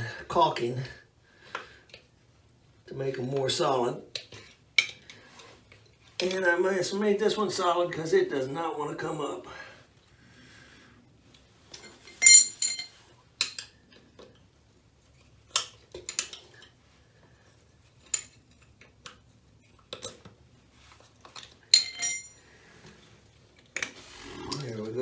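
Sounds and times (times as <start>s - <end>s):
metal tools clinking and knocking: 11.7s - 13.0s, 21.7s - 22.4s.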